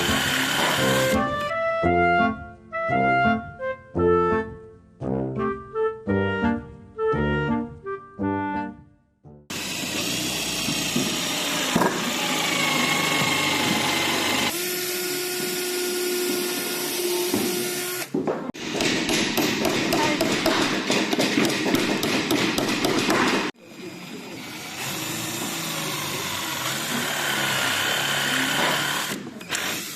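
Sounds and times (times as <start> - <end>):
electric drill whining: 0.0 - 1.5, 9.5 - 18.1, 23.7 - 29.9.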